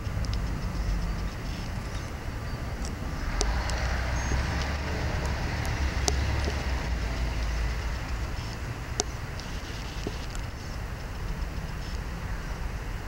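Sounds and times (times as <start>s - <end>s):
sharp clicks: 0.0s - 2.2s, 2.8s - 12.1s
road traffic rumble: 0.0s - 13.0s
high chirp: 0.4s - 10.8s.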